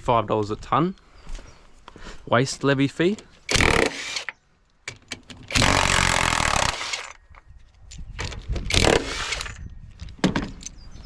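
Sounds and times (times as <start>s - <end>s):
handheld power tool running: 3.5s - 4.3s, 5.5s - 7.2s, 8.7s - 9.5s
small knocks of parts: 9.4s - 10.8s.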